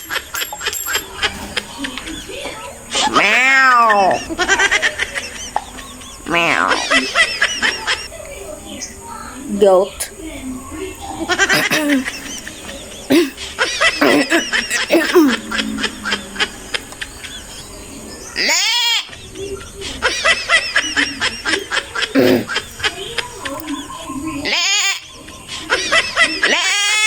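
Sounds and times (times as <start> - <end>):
giggle-like sounds: 11.3 - 15.9, 19.8 - 23.0.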